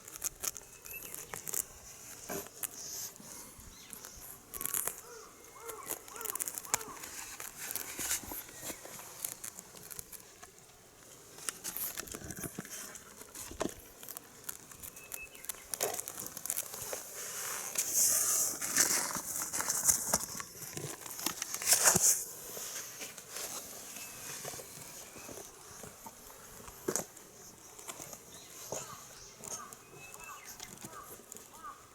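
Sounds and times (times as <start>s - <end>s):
kittens scuffling and tapping: 0.0s - 31.7s.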